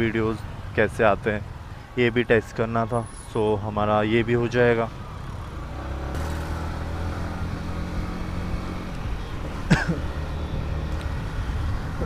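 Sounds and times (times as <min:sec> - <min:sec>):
road and wind noise: 0:00.0 - 0:12.0
motorcycle engine cruising: 0:04.9 - 0:12.0.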